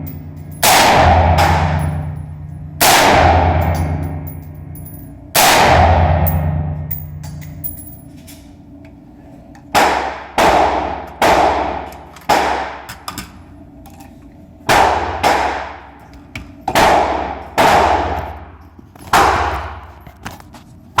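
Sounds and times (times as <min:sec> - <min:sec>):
rifle shots: 0:00.0 - 0:02.2, 0:02.8 - 0:04.4, 0:05.4 - 0:07.6, 0:09.8 - 0:12.9, 0:14.7 - 0:15.8, 0:16.7 - 0:18.3, 0:19.1 - 0:19.9.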